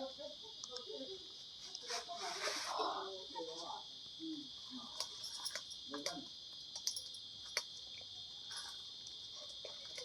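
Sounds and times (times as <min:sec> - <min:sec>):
high-pitched insect chorus: 0:00.0 - 0:10.0.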